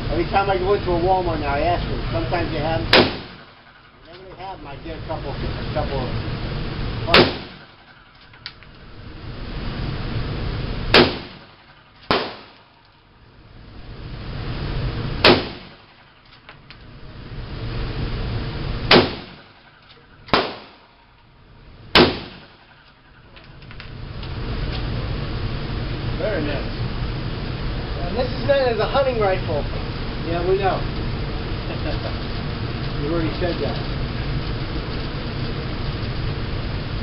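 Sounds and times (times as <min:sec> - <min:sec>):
loud gunshots indoors: 0:02.9 - 0:03.5, 0:07.1 - 0:07.7, 0:10.9 - 0:11.5, 0:12.1 - 0:12.6, 0:15.2 - 0:15.8, 0:18.9 - 0:19.4, 0:20.3 - 0:20.8, 0:22.0 - 0:22.6
quieter gunshots: 0:02.9 - 0:03.8, 0:07.1 - 0:07.9, 0:10.9 - 0:12.8, 0:15.2 - 0:16.1, 0:18.9 - 0:21.0, 0:21.9 - 0:22.8.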